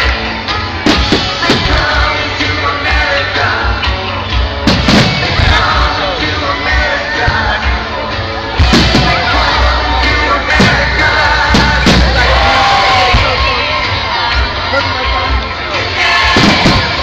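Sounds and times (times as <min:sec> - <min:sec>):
rock song with singing: 0:00.0 - 0:17.0
fireworks banging: 0:00.8 - 0:02.2, 0:04.6 - 0:06.3, 0:08.6 - 0:13.5, 0:16.2 - 0:17.0.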